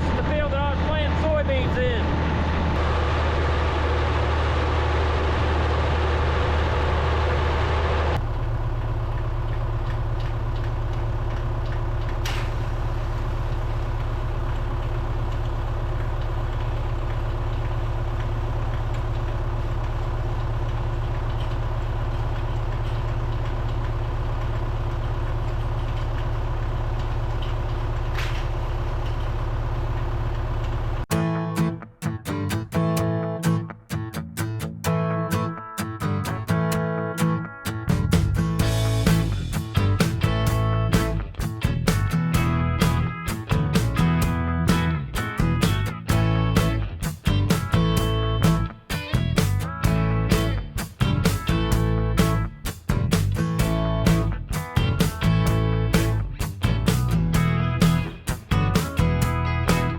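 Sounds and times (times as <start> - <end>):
tractor engine running: 0.0 - 31.3, 36.6 - 59.9
guitar music: 31.1 - 59.9.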